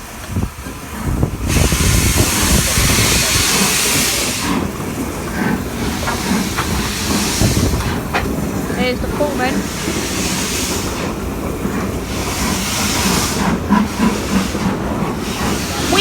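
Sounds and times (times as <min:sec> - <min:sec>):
locomotive rumbling and knocking: 0:00.0 - 0:16.0
steam hissing: 0:00.1 - 0:16.0.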